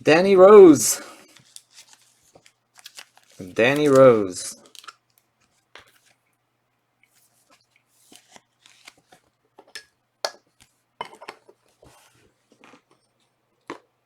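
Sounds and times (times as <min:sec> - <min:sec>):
trading cards rustling: 0:00.6 - 0:06.2, 0:07.2 - 0:09.3.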